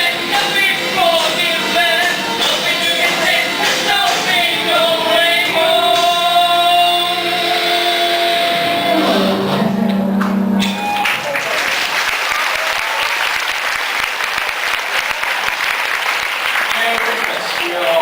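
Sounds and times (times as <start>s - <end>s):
live rock band: 0.0s - 9.7s
person singing: 0.0s - 10.1s.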